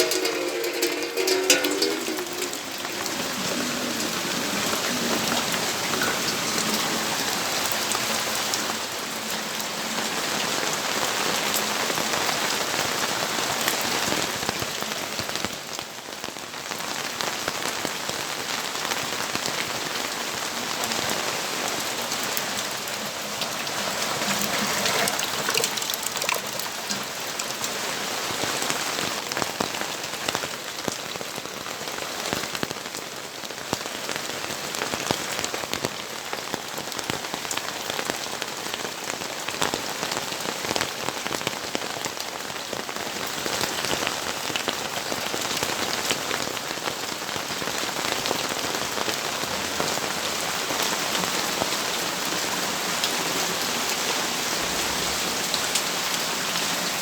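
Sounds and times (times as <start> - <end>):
drops ticking on hard surfaces: 0.0 - 3.7
steady rainfall: 0.0 - 57.0.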